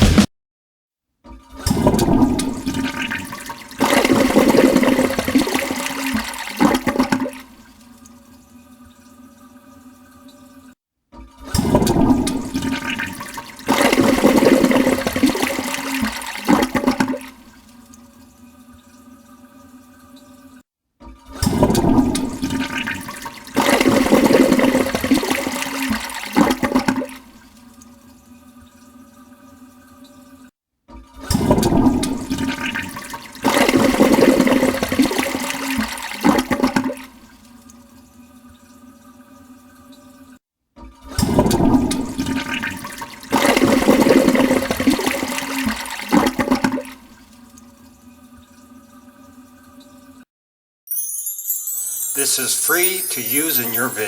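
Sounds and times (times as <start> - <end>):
toilet flushing: 1.3 - 50.2.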